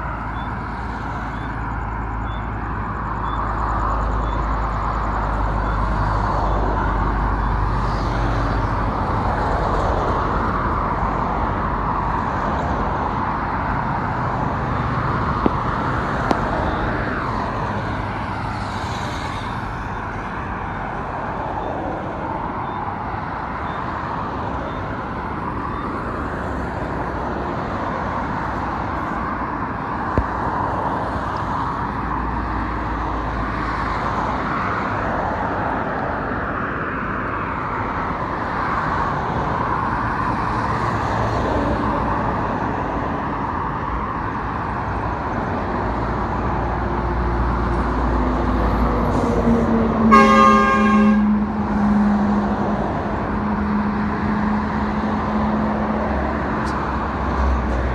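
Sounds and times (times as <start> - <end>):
highway traffic passing: 0.0 - 57.9
vehicle horn: 50.1 - 51.5.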